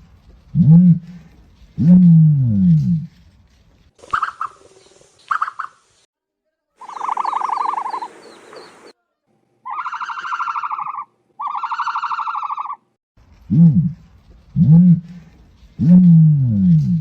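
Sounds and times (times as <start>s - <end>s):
bird calls: 4.0s - 6.0s, 6.8s - 9.0s, 9.7s - 12.8s.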